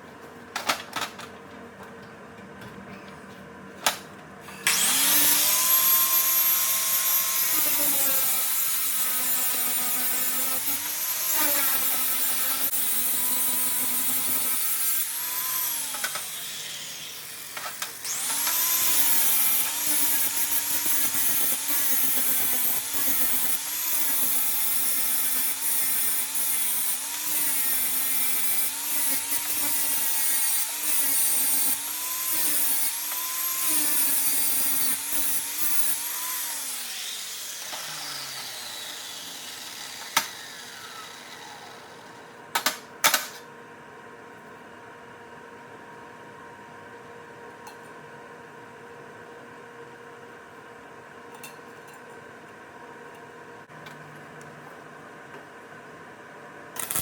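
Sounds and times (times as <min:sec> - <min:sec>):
electric power tool running: 0:04.6 - 0:42.3, 0:56.8 - 0:57.0.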